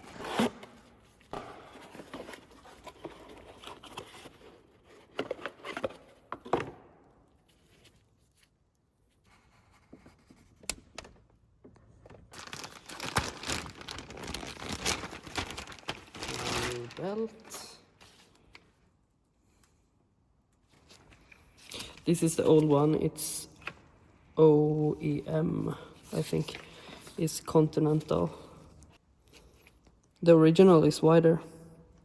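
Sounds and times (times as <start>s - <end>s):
plastic and paper crinkling: 12.0s - 18.5s.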